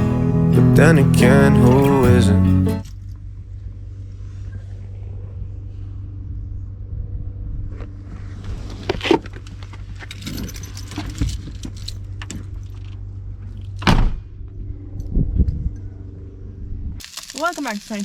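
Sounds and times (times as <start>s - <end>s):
vehicle low rumble: 0.0s - 18.0s
jangling and rattling: 9.4s - 13.8s.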